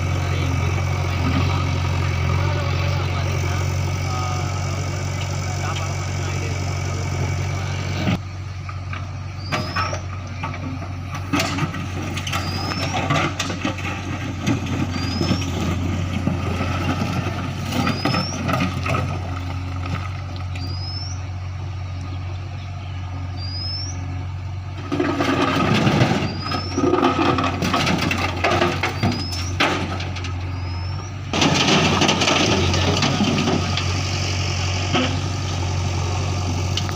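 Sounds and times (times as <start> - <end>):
diesel engine running: 0.0 - 36.9
short high rising chirp: 23.4 - 24.1
machinery knocks and clatter: 24.8 - 30.4, 31.3 - 34.0.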